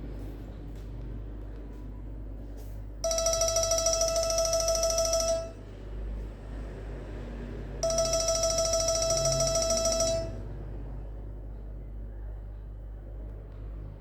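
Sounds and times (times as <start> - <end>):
held electronic ringtone: 3.0 - 5.6, 7.8 - 10.4.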